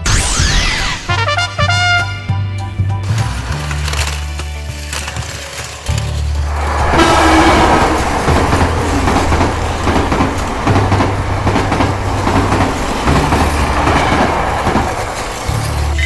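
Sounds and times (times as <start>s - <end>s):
toy wheels rattling on track: 3.2s - 6.6s.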